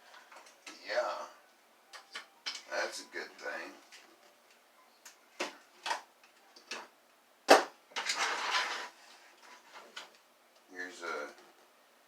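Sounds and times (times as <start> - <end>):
scraping and rustling: 8.0 - 10.2.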